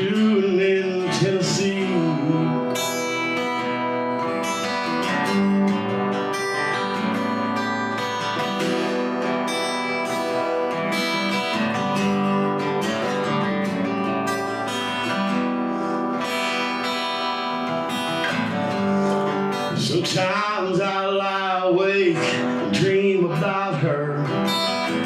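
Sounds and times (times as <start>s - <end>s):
acoustic guitar strumming: 0.0s - 25.0s.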